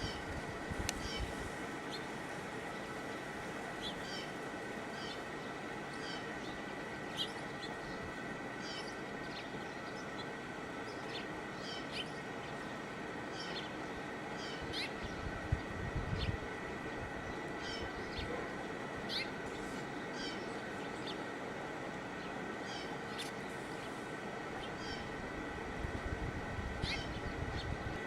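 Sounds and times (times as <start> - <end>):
birds chirping: 0.0 - 21.3, 22.1 - 25.4, 26.8 - 27.8.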